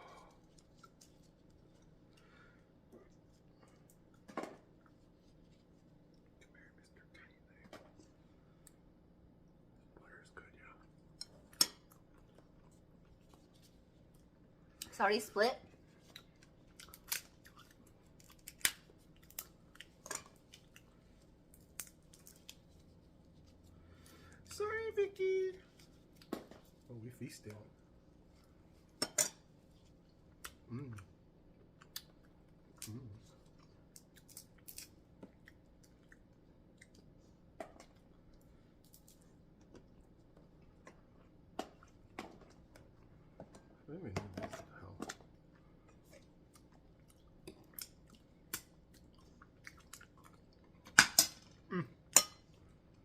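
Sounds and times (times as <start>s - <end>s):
faint chewing: 0.1s - 8.9s, 9.5s - 15.0s, 15.7s - 24.5s, 28.2s - 43.8s, 44.6s - 53.0s
seafood shells cracking: 16.2s - 20.8s, 21.5s - 22.7s, 33.8s - 35.2s.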